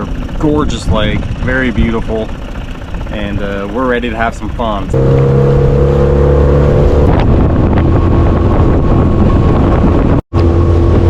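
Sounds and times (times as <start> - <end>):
motorboat engine running: 0.0 - 11.0
wind buffeting microphone: 4.5 - 11.0.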